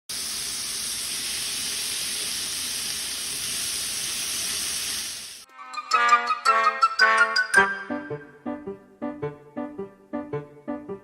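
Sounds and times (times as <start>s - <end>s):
steady hiss: 0.1s - 5.5s
bright chiming tune: 5.6s - 8.4s.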